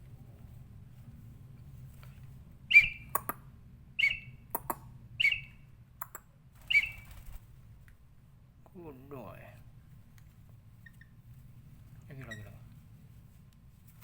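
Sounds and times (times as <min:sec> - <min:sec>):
bird chirping: 0:02.7 - 0:03.4, 0:04.0 - 0:05.6, 0:06.6 - 0:07.4.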